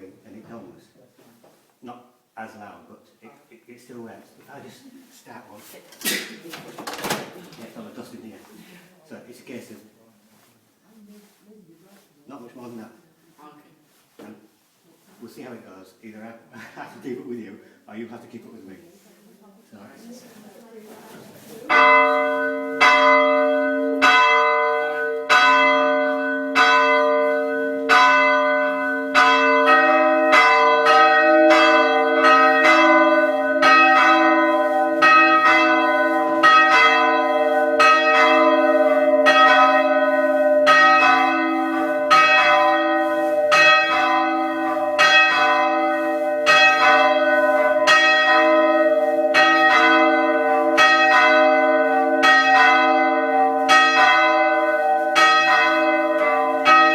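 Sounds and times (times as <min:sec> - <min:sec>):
church bells ringing: 0:21.6 - 0:56.9.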